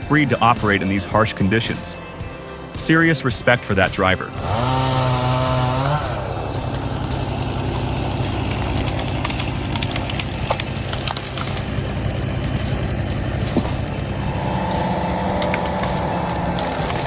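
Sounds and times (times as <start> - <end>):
heavy diesel engine running: 0.0 - 17.0.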